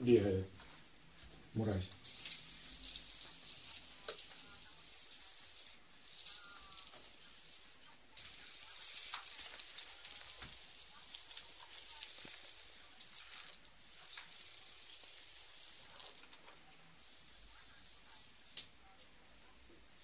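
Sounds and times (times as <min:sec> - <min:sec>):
faint crackling hiss: 0:00.0 - 0:20.0.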